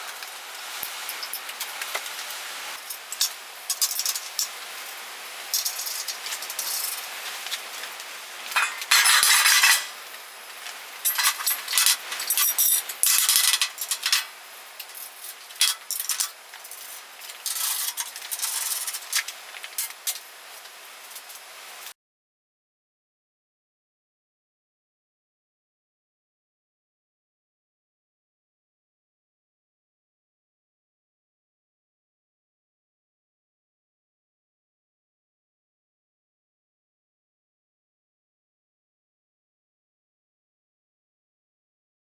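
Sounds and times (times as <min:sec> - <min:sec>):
metallic clinks of small parts: 0:02.8 - 0:05.0, 0:05.6 - 0:07.6, 0:08.6 - 0:10.0, 0:11.0 - 0:20.3.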